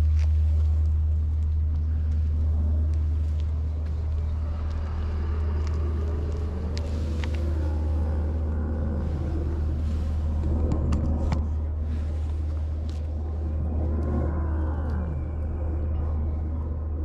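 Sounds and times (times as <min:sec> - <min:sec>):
faint clicks: 0:00.0 - 0:11.6
low rumble: 0:00.0 - 0:17.0
wavering hum: 0:00.0 - 0:17.0.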